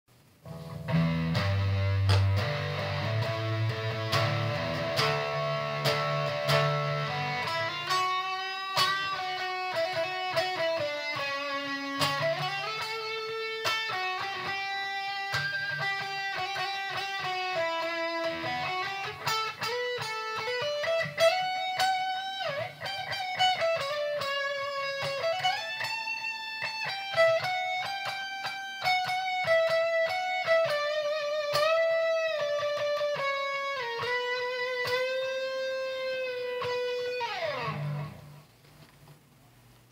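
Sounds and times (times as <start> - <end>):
solo electric guitar: 0.4 - 38.6.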